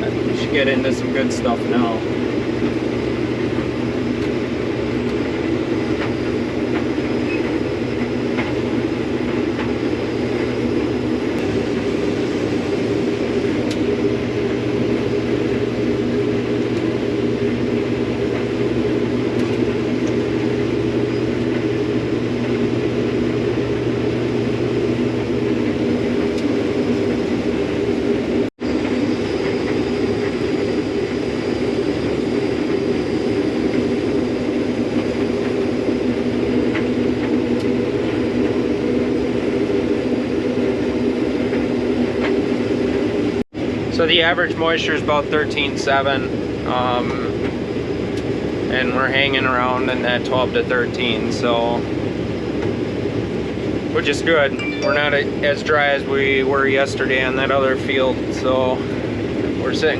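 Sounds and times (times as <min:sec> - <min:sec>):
combine harvester running: 0:00.0 - 0:46.5.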